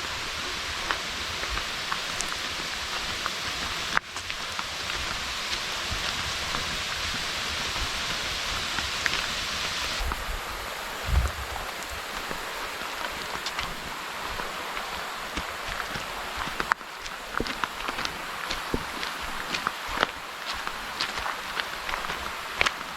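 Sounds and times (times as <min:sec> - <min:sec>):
waterfall rushing: 0:00.0 - 0:22.9
low thump: 0:11.1 - 0:11.5.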